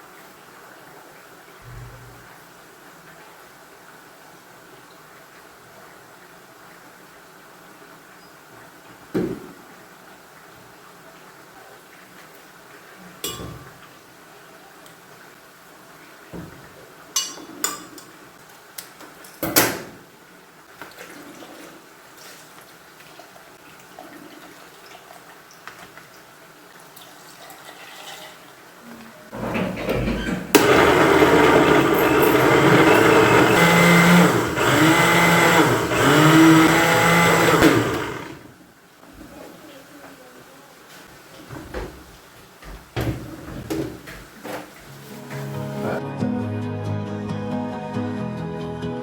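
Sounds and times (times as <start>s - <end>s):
dishes clinking: 13.2s - 13.8s, 17.2s - 18.2s
blender running: 30.6s - 38.6s.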